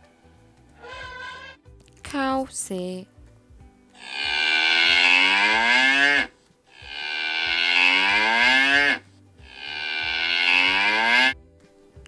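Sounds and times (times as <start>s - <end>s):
cow mooing: 0.8s - 1.6s, 4.0s - 11.4s.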